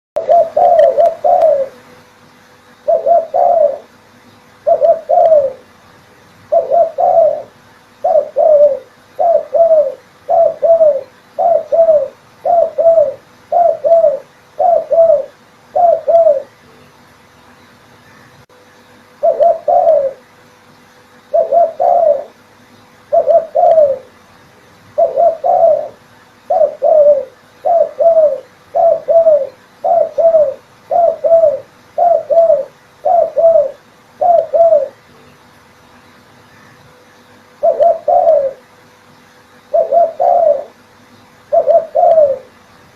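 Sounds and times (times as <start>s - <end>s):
dove cooing: 0.2s - 2.0s, 2.8s - 4.0s, 4.6s - 5.8s, 6.4s - 16.7s, 19.2s - 20.3s, 21.2s - 22.4s, 23.0s - 24.2s, 24.9s - 35.1s, 37.5s - 38.7s, 39.6s - 40.8s, 41.4s - 42.6s.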